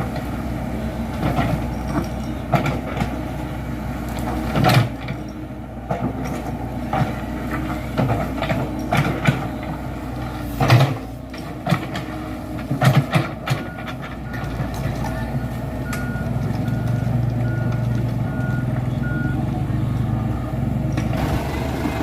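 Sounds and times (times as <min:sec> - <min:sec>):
excavator diesel engine running: 0:00.0 - 0:22.0
metallic clanks and knocks: 0:01.2 - 0:03.2, 0:07.9 - 0:09.8.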